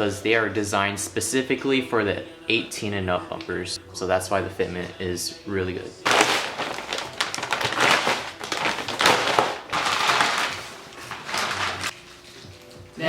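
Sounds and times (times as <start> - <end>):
plastic scraping: 6.0 - 12.0
plastic rustling: 6.0 - 13.0.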